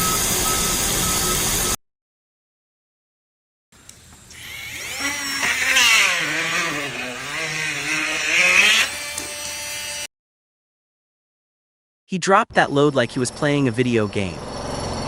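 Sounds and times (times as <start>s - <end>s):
motor whining: 3.9s - 10.1s.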